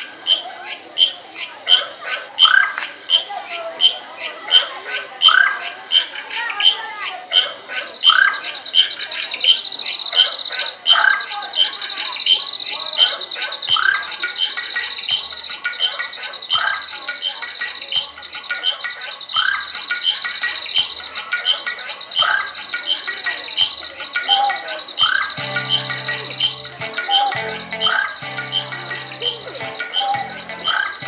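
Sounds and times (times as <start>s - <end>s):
crickets chirring: 0.0s - 31.0s
frog-like croaks: 21.5s - 31.0s.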